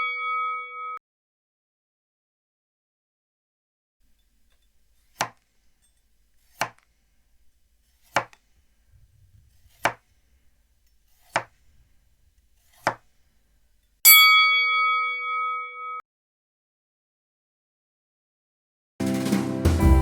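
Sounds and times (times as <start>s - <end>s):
bell ding: 0.0s - 1.0s, 14.1s - 16.0s.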